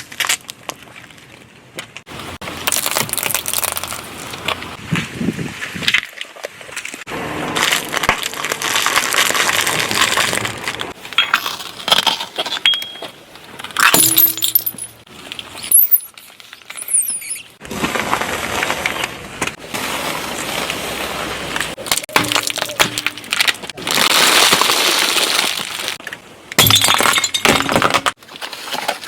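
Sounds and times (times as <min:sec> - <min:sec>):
tyres crushing objects: 0:01.8 - 0:04.8, 0:21.5 - 0:29.0
brief squeaks: 0:15.6 - 0:17.6.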